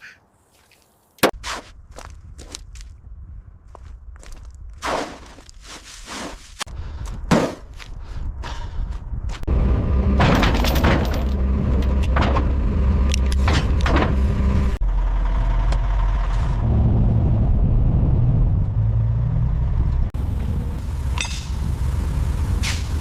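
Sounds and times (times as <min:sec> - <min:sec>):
vehicle engine running: 0:09.4 - 0:23.0
metal clanks and knocks: 0:10.1 - 0:12.6.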